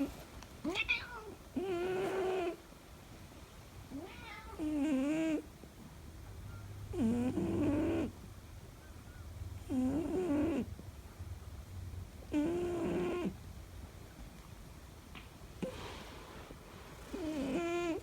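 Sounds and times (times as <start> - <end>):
cat snoring: 1.6 - 2.6, 4.6 - 5.4, 6.9 - 8.2, 9.6 - 10.7, 12.3 - 13.4, 17.1 - 18.0.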